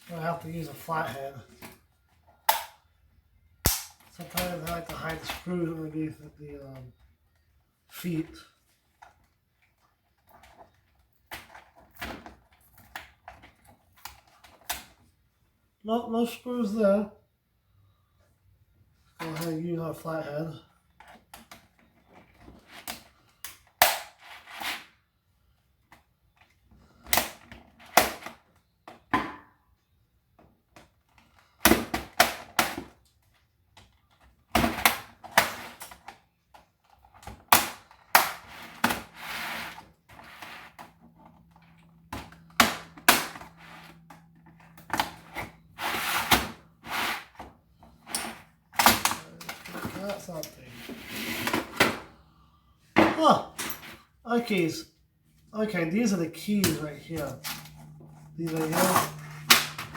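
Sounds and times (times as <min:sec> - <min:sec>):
plastic clicks snaps and cracks: 0:03.6 - 0:05.0.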